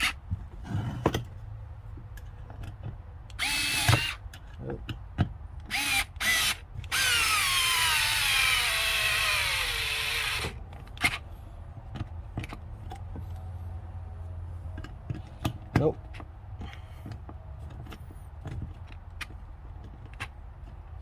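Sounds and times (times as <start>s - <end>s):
light handling clicks and knocks: 0.2s - 5.7s, 10.5s - 13.6s, 14.2s - 21.0s
electric screwdriver driving screw: 3.3s - 4.2s, 5.7s - 11.2s.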